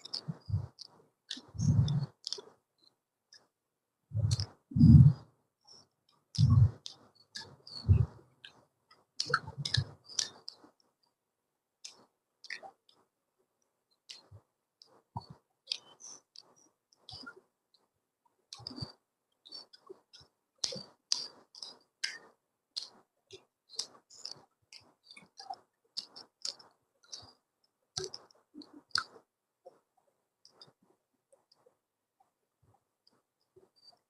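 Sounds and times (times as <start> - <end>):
chewing food with mouth clicks: 0.0 - 2.6, 4.2 - 10.8, 14.0 - 17.4, 18.5 - 31.6.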